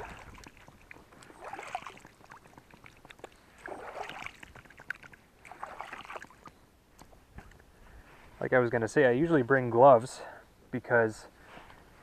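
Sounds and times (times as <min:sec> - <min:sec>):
water splashing from paddle strokes: 0:00.0 - 0:06.6
small drips and clicks: 0:00.0 - 0:07.7.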